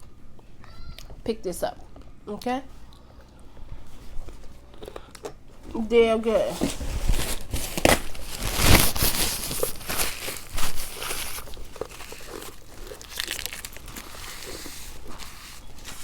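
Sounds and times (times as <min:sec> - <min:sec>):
plastic wrappers crinkling: 0:06.3 - 0:16.0.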